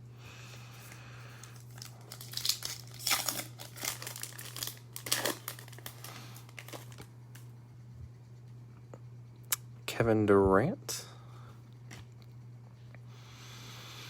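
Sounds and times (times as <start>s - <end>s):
steady low hum: 0.0s - 14.0s
plastic wrapper tearing and crinkling: 1.4s - 7.4s.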